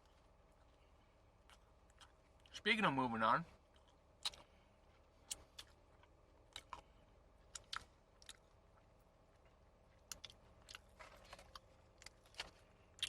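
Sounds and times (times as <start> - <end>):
mouth chewing clicks and smacks: 1.4 - 2.6, 3.6 - 4.6, 5.2 - 13.0.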